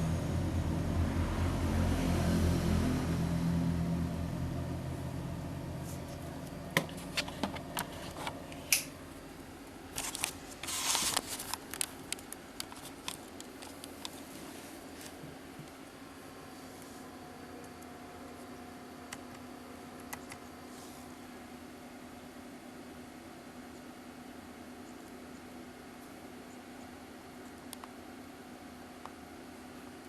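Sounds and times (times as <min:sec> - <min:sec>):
low hum: 0:00.0 - 0:14.2
scraping rustle: 0:10.0 - 0:11.8.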